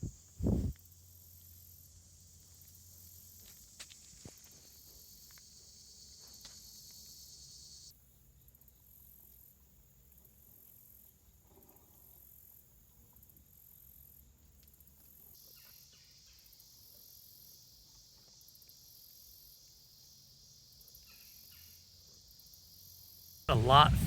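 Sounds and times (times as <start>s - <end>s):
insects chirping: 0.0s - 7.9s, 16.5s - 24.0s.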